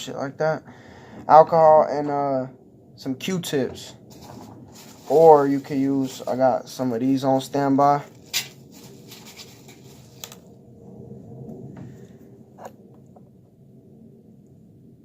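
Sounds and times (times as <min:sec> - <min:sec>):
low steady hum: 0:00.0 - 0:15.0
handling clicks and rustling: 0:08.1 - 0:10.5.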